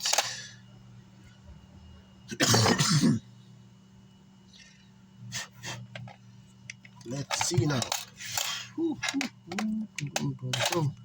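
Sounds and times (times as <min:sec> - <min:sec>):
steady low hum: 0:00.0 - 0:11.0
man coughing and clearing throat: 0:02.3 - 0:03.2.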